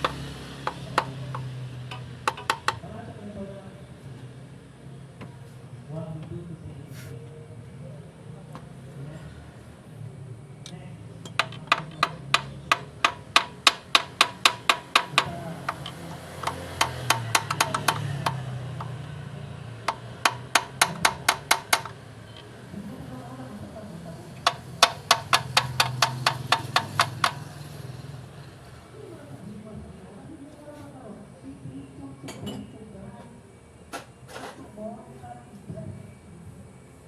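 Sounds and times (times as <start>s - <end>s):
hand tool clicking: 0.0s - 2.8s, 11.3s - 19.1s, 19.9s - 22.0s, 24.4s - 27.5s.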